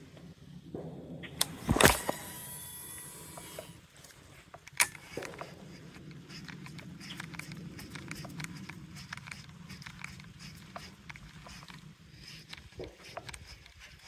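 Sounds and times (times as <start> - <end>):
fishing reel whirring and ticking: 1.4 - 3.9, 4.5 - 14.0
reel click: 4.5 - 14.0.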